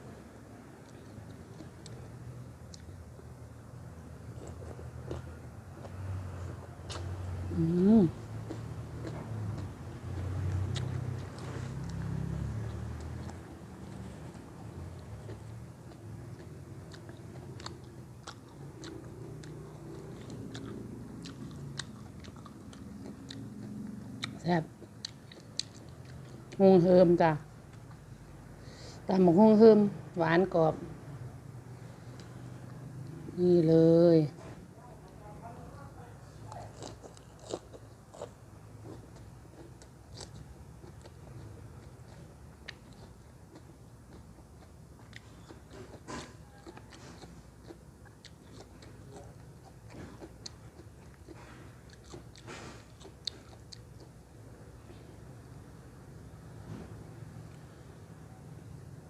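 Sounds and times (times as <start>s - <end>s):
person chewing crunchy food: 4.1s - 26.6s, 36.5s - 54.6s.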